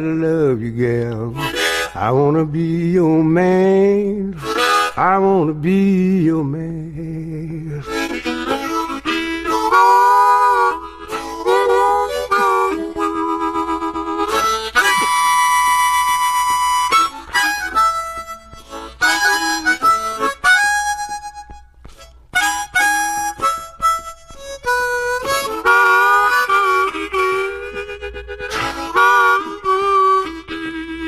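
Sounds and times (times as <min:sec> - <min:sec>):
person singing: 0:00.0 - 0:09.0, 0:28.5 - 0:30.5
blues harmonica: 0:00.0 - 0:31.0.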